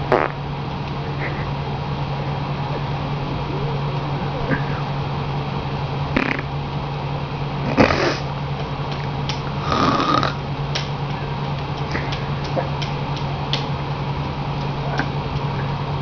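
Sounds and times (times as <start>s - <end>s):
steady low hum: 0.0s - 16.0s
woman snoring: 9.6s - 10.4s.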